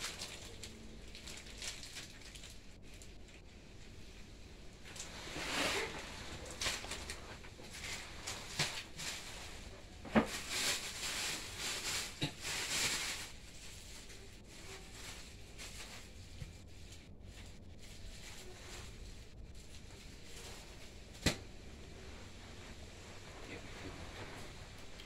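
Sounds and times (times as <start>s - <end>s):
plastic packaging crinkling: 0.0s - 3.4s, 4.8s - 16.6s.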